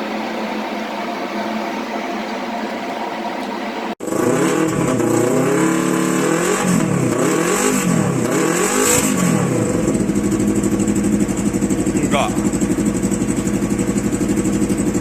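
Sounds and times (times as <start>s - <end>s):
motorcycle engine revving: 4.0s - 15.0s.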